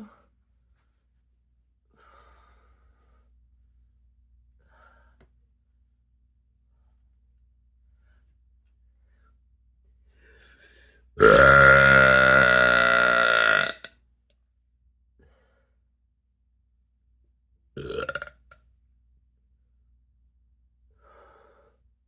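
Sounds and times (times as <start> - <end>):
person belching: 11.2 - 13.9, 17.8 - 18.3.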